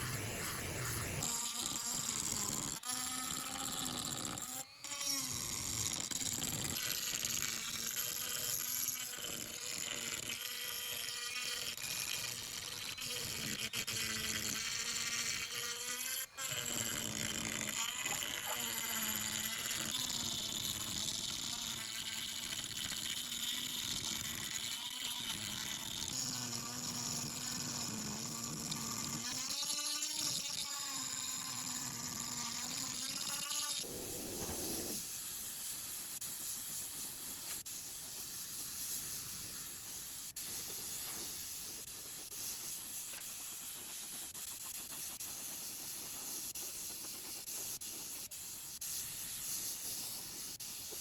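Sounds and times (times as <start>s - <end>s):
small motor buzzing: 0.0s - 35.0s.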